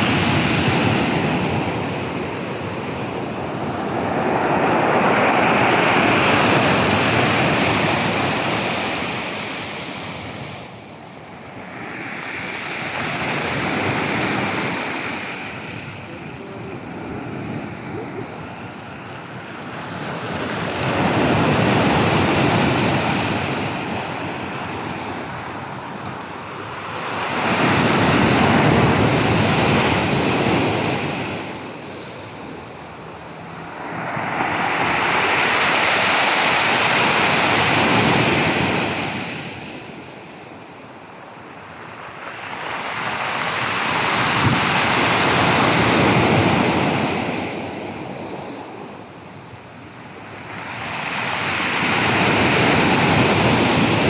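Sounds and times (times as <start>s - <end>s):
waves breaking on shore: 0.0s - 54.0s
wind buffeting microphone: 12.4s - 54.0s.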